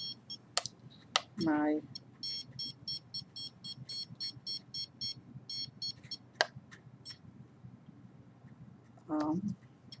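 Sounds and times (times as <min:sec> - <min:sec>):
rapid high-pitched meter beeps: 0:00.0 - 0:00.4, 0:01.9 - 0:06.2.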